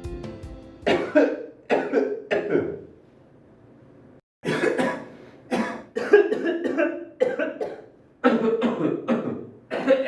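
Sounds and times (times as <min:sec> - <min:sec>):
person coughing: 0:00.9 - 0:02.9, 0:04.4 - 0:10.0.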